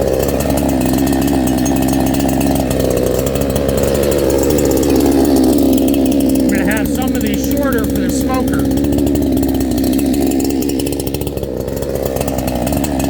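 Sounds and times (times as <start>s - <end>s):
chainsaw engine running: 0.0s - 13.0s.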